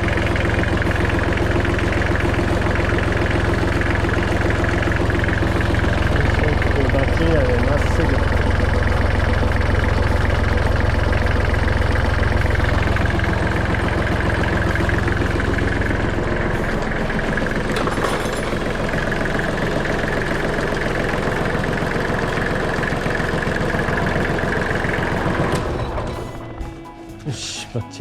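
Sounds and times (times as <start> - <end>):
tractor diesel engine idling: 0.0 - 28.0.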